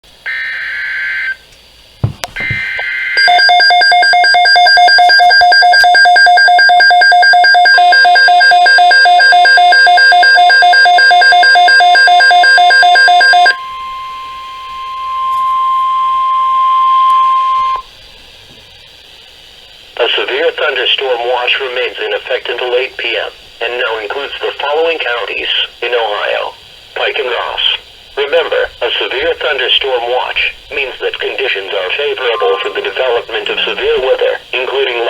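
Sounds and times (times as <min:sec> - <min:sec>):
steady warning alarm tone: 0:00.2 - 0:17.9, 0:30.9 - 0:35.0
rapid electronic alert beeping: 0:02.4 - 0:13.6, 0:31.4 - 0:34.0
screechy digital header bursts: 0:31.2 - 0:34.1.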